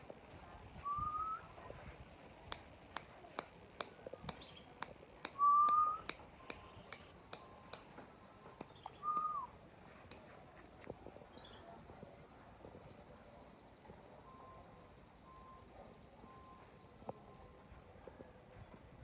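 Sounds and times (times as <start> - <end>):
songbird whistled notes: 0.7 - 1.8, 4.2 - 9.8, 14.0 - 17.6
sharp ticks: 2.2 - 11.1.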